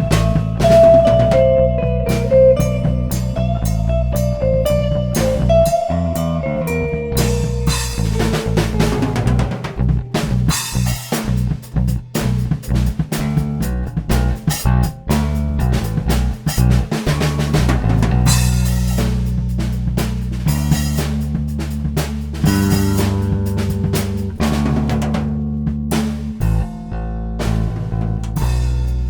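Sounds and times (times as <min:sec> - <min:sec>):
electric guitar: 0:00.0 - 0:11.2
drum kit: 0:00.0 - 0:29.0
electric bass: 0:00.0 - 0:29.0.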